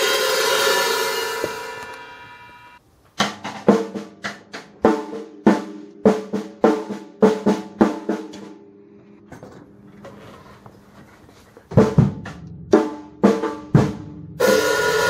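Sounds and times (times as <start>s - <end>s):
drum kit beat: 0.0s - 8.6s, 11.7s - 15.0s.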